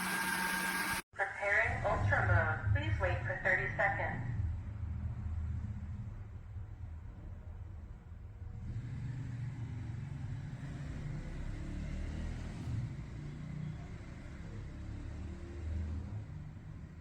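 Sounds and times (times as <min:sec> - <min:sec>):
vacuum cleaner rumble: 0:00.0 - 0:01.0.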